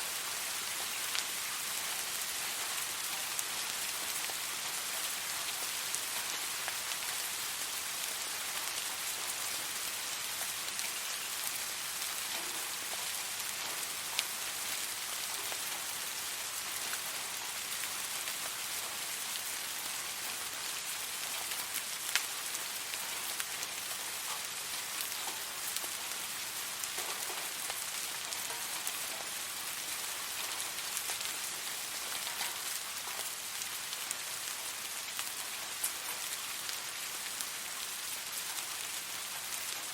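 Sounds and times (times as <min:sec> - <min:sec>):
raindrops ticking: 0:12.0 - 0:16.0, 0:21.2 - 0:34.4.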